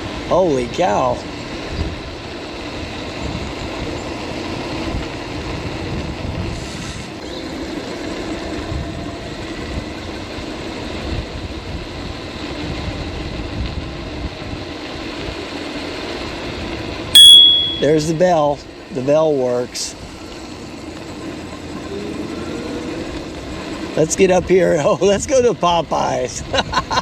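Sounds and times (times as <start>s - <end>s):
wind rumble on microphone: 0.0s - 17.2s, 21.0s - 27.0s
low hum of motor and tyres: 0.0s - 27.0s.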